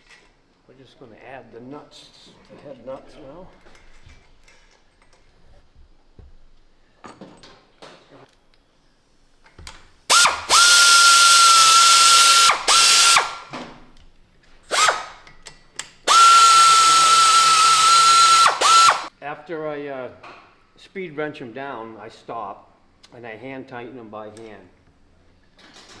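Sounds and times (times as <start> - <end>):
power ratchet whining and rattling: 10.1 - 13.5, 14.7 - 15.3, 16.1 - 19.1.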